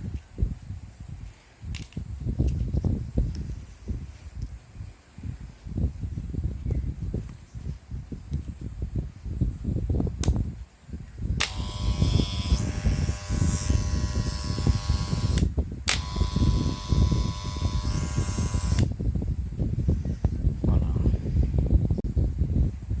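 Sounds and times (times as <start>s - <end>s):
electric hair clipper buzzing: 11.4s - 18.9s.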